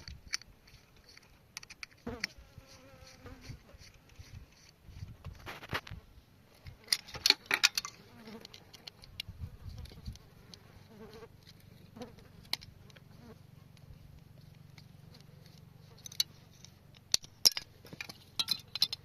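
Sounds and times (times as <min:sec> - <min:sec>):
sharp clicks and knocks: 0:13.8 - 0:19.0.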